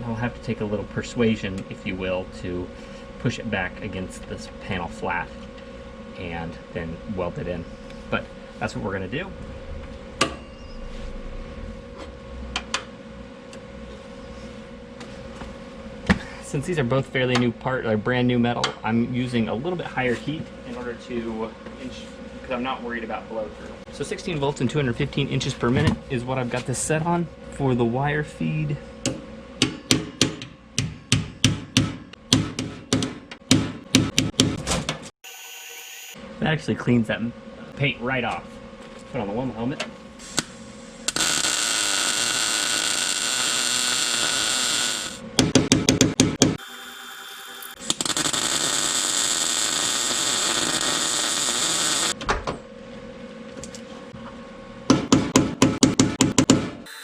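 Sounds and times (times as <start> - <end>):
welder hissing: 40.2 - 45.2, 47.7 - 52.2.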